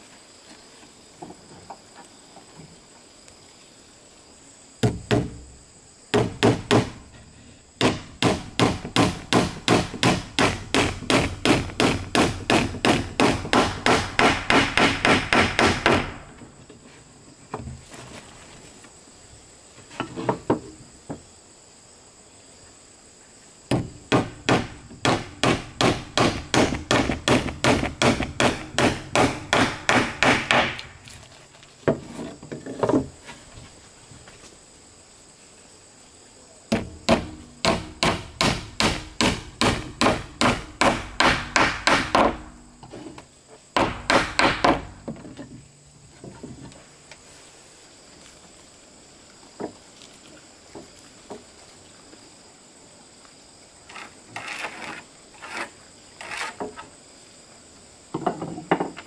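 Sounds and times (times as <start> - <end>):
hammer blows on wood: 36.7 - 42.8.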